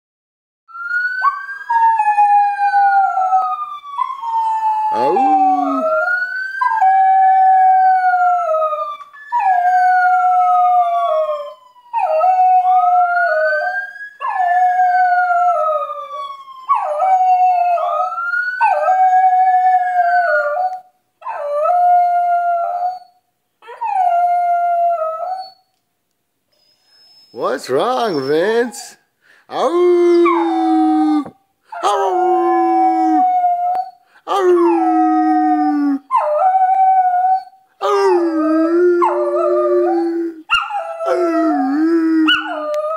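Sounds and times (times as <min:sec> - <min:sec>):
wailing ambulance siren: 0:00.7 - 0:20.8, 0:30.0 - 0:42.9
dog howling: 0:04.6 - 0:06.1, 0:29.6 - 0:42.9.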